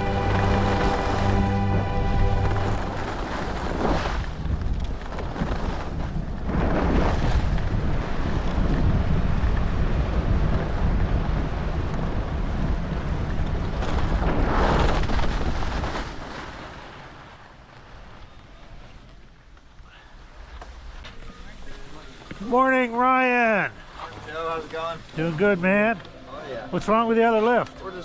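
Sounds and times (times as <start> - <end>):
wind buffeting microphone: 0.0 - 15.8
skis carving over snow: 0.0 - 28.0.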